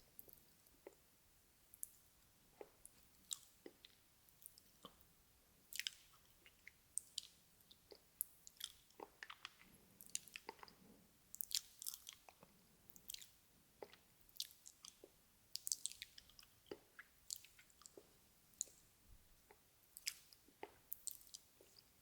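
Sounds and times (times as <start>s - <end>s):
wet lip and tongue clicks: 5.7s - 18.8s, 19.5s - 21.8s.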